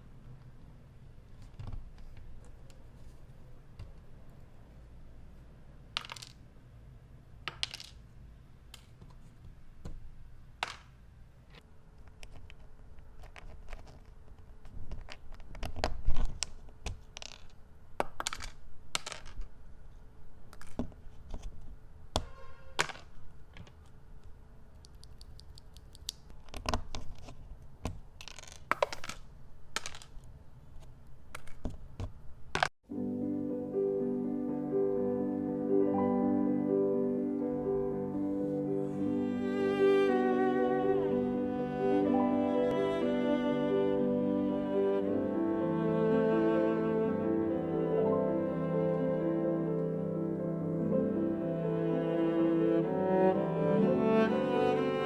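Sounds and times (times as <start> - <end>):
piano music: 32.8 - 55.0.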